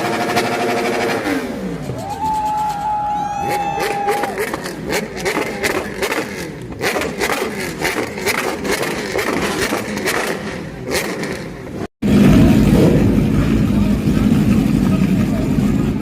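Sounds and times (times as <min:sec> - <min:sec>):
engines running: 0:00.0 - 0:16.0
deep rumble: 0:12.0 - 0:16.0.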